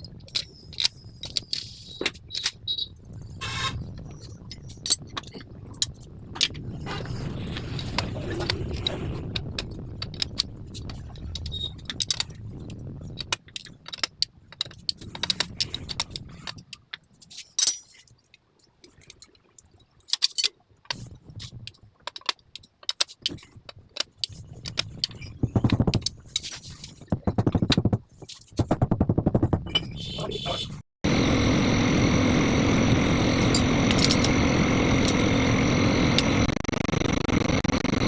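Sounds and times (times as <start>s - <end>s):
metal tools clinking: 17.4s - 18.0s
low rumble: 31.1s - 38.0s.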